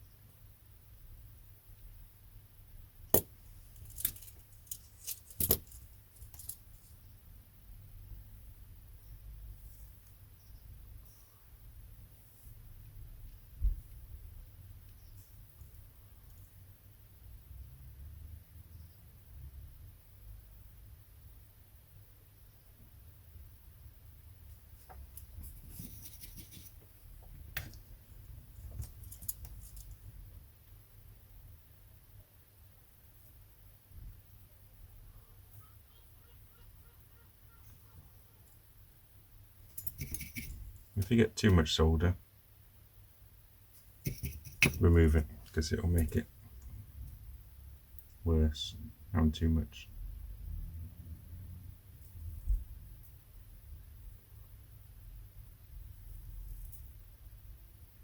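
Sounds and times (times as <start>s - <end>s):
small tools clicking and tapping: 39.7s - 40.6s, 44.0s - 44.8s.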